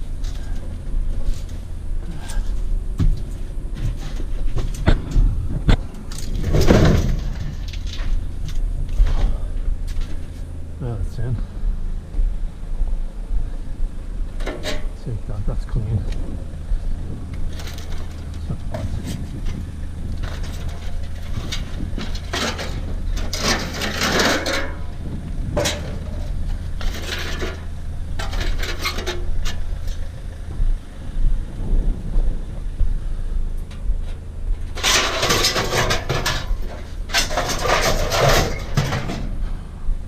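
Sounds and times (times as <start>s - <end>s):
scrap metal clattering and scraping: 0.0s - 10.5s, 14.4s - 15.0s, 17.4s - 30.5s, 33.7s - 39.6s
steady low hum: 0.0s - 40.0s.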